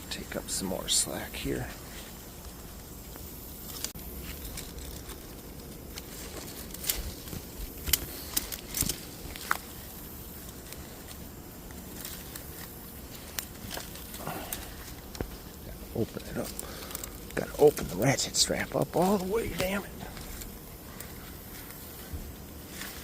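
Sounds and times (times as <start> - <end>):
outdoor background noise: 0.0 - 23.0
clicks and snaps of sticks: 2.4 - 18.1.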